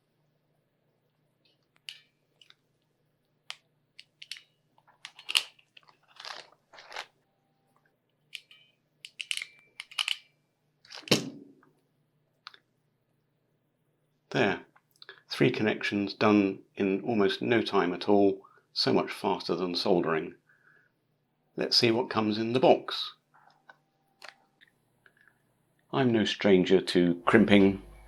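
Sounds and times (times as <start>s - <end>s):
light handling clicks: 3.5s - 7.0s, 8.3s - 10.3s
crimping tool crunching: 5.1s - 7.1s.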